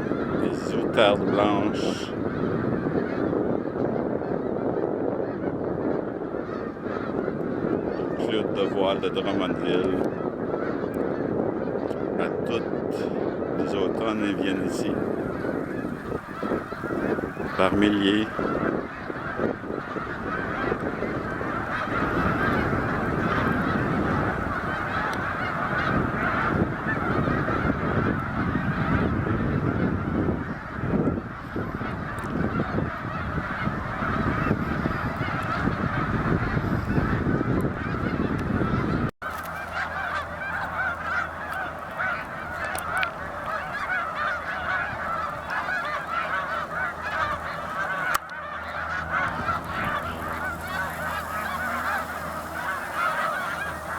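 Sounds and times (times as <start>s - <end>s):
geese honking: 0.0s - 53.9s
low rumbling noise: 39.5s - 53.9s.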